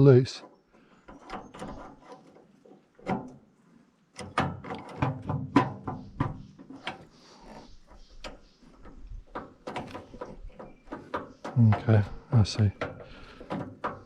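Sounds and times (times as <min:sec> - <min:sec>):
metal parts knocking and rattling: 0:08.2 - 0:14.0.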